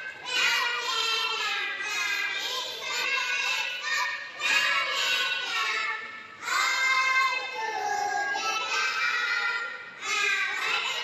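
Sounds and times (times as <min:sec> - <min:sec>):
young children singing: 0:00.0 - 0:11.0.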